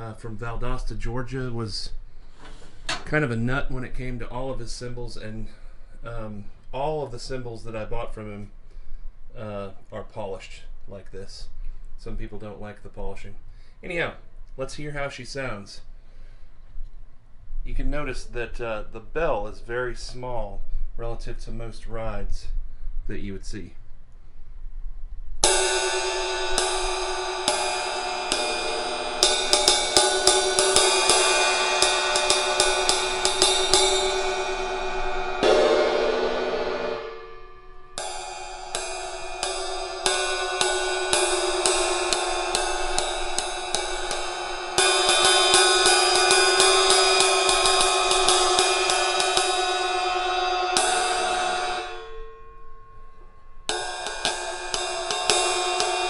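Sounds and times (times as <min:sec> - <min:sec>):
ride cymbal struck and ringing: 0:25.4 - 0:56.0.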